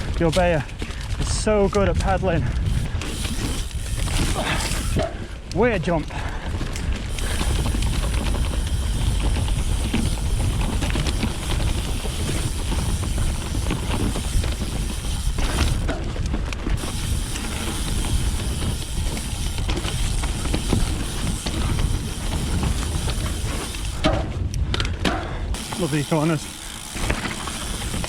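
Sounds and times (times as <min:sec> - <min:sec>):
wind buffeting microphone: 0:00.0 - 0:25.8
bike clicks and knocks: 0:00.0 - 0:28.0
tyres rolling on dirt: 0:00.0 - 0:28.0.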